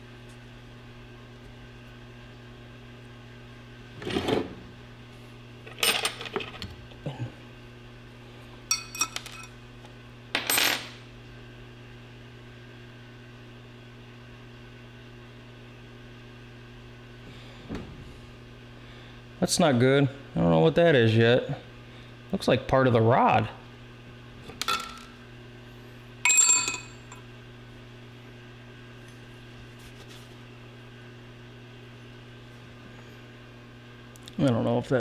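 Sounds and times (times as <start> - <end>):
steady low hum: 0.0 - 35.0
metal parts clinking: 8.7 - 9.5, 26.3 - 27.2.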